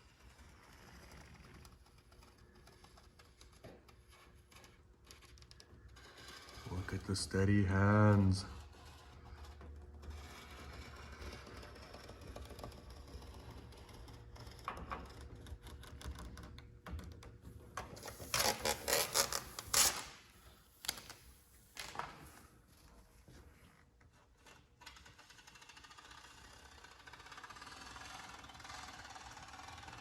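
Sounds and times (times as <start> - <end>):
utility knife blade scratching glass: 18.0 - 20.2.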